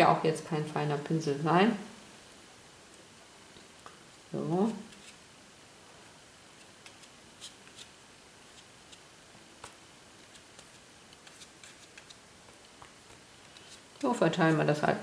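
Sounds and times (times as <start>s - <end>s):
low steady hiss: 0.0s - 15.0s
brush scratching spreading glue: 4.8s - 5.2s, 6.6s - 9.0s, 10.2s - 14.7s.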